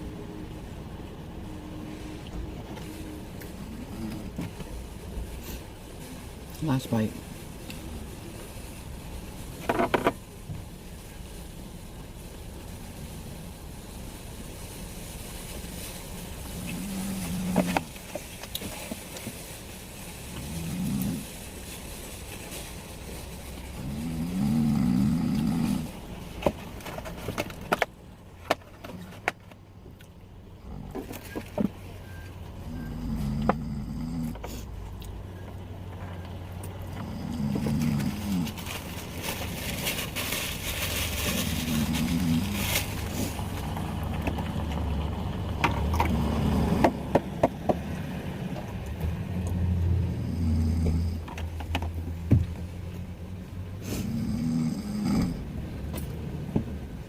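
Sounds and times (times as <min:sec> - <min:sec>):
steady low hum: 0:00.0 - 0:47.2
person snoring: 0:23.8 - 0:26.0, 0:32.7 - 0:34.5, 0:37.0 - 0:38.6, 0:50.2 - 0:51.3, 0:54.0 - 0:55.5.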